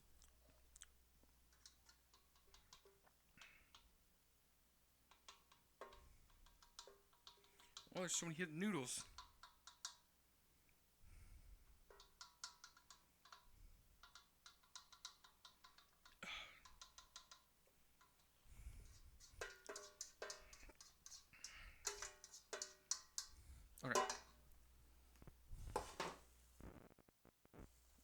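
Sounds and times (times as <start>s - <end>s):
utensil clinking on cookware: 19.2s - 24.4s.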